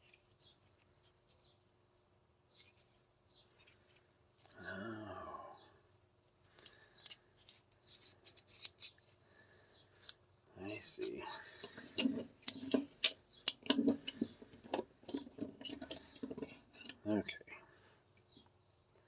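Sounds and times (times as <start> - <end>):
small metal parts clicking and scraping: 2.5 - 4.7, 6.4 - 9.2, 9.9 - 10.2, 10.8 - 17.0
person humming: 4.6 - 5.7.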